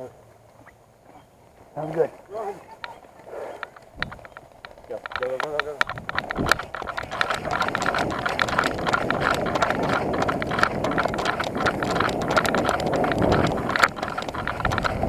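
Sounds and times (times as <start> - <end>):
running footfalls: 0.0 - 15.0
steady rushing noise: 3.6 - 15.0.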